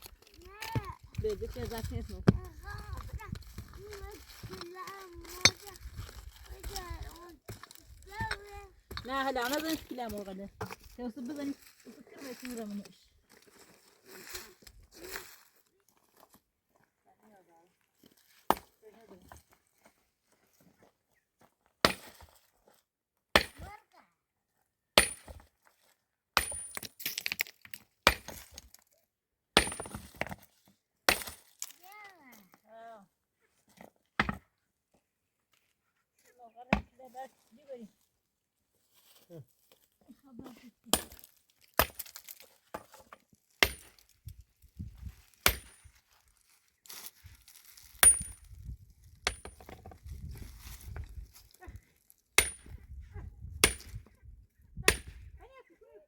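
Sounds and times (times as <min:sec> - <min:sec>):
metal tool striking wood: 0:23.4 - 0:23.7, 0:25.0 - 0:25.5, 0:26.4 - 0:27.4, 0:29.6 - 0:30.4, 0:34.2 - 0:34.4, 0:40.9 - 0:44.0, 0:45.4 - 0:45.9, 0:48.0 - 0:48.5, 0:49.2 - 0:50.0, 0:52.4 - 0:52.8, 0:53.6 - 0:54.0, 0:54.8 - 0:55.2.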